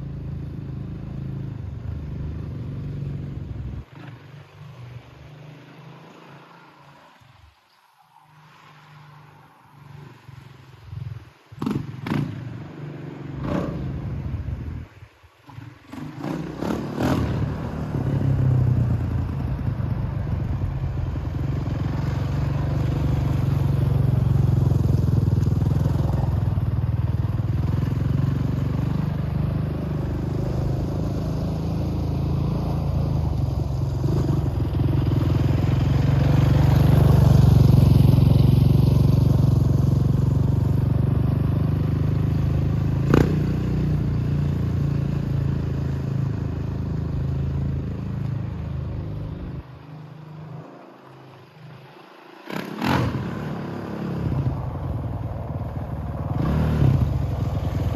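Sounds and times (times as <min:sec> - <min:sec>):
quad engine running: 0:16.3 - 0:49.6, 0:52.5 - 0:57.9.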